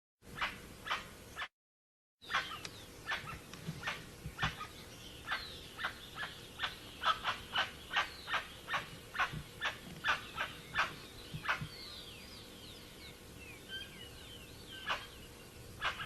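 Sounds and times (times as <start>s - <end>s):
bird giving sharp calls: 2.2s - 12.0s, 14.7s - 16.0s.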